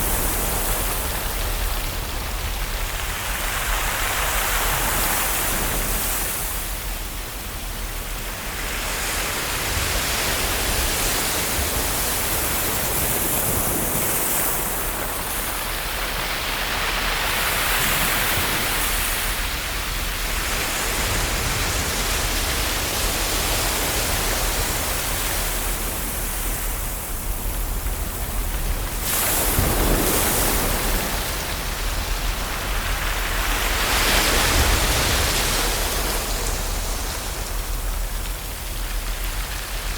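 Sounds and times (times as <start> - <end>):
ocean waves breaking on shore: 0.0 - 39.9.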